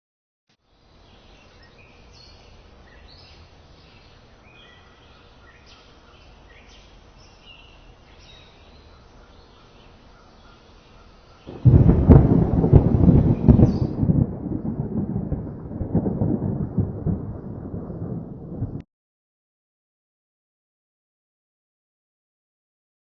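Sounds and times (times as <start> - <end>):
birds chirping faintly: 0.6 - 18.8
thunder clap rumbling: 11.5 - 18.8.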